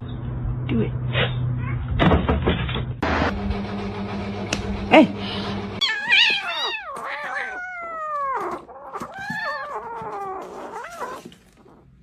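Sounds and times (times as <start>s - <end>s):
cat yowling: 5.8s - 11.9s.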